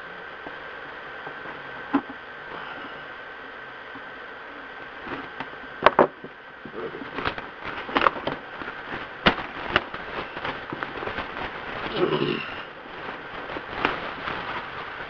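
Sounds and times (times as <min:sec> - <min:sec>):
cardboard and tape crackling: 0:06.7 - 0:15.0.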